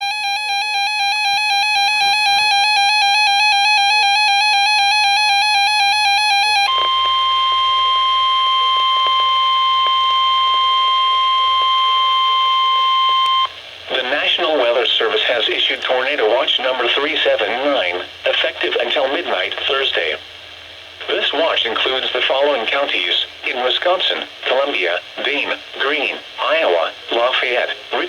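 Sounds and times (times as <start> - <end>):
alarm beeping in rapid pulses: 0.0 - 13.6
steady warning alarm tone: 0.0 - 13.6.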